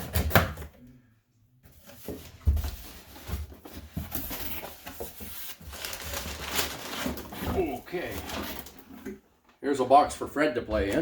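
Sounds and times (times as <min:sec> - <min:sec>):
cardboard box rustling and scraping: 0:01.7 - 0:09.1.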